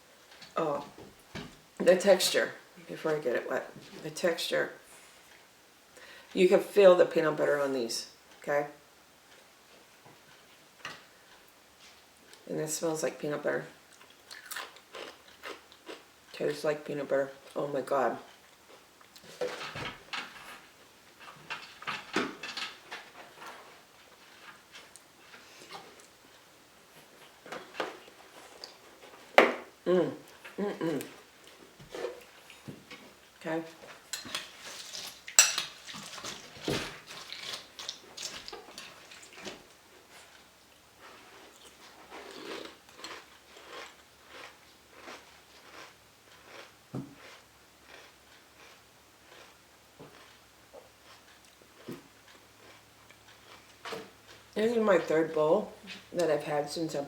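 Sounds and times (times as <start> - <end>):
cereal crunching under chewing: 13.9 - 16.1, 41.2 - 54.6.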